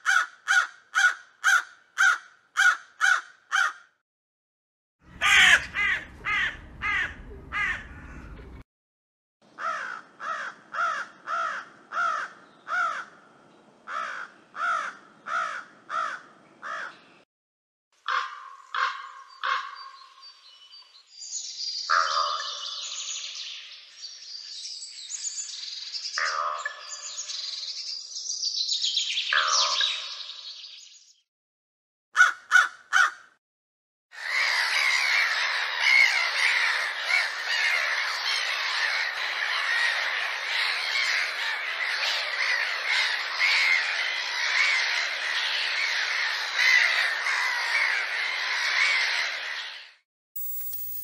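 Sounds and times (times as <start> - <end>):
crows cawing: 0.0 - 4.0, 5.1 - 8.6, 9.5 - 13.2, 13.9 - 17.0, 18.0 - 19.8, 21.9 - 22.6, 26.2 - 26.7, 32.2 - 33.4, 34.2 - 49.8
low rumble: 5.1 - 8.6.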